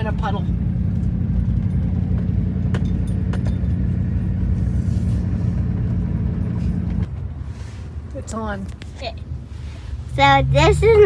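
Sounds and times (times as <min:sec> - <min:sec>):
road rumble: 0:00.0 - 0:11.0
vehicle engine running under load: 0:00.0 - 0:11.0.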